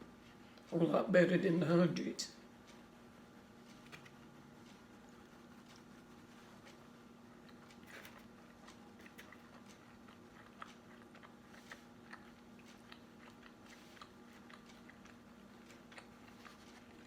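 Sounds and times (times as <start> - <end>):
steady low hum: 0.0 - 17.0
person chewing: 3.7 - 17.0.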